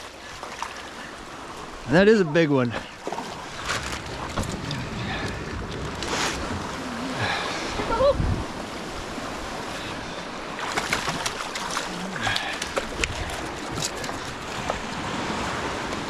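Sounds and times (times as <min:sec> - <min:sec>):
ocean surf washing: 0:00.0 - 0:16.0
wind on microphone: 0:03.6 - 0:10.2.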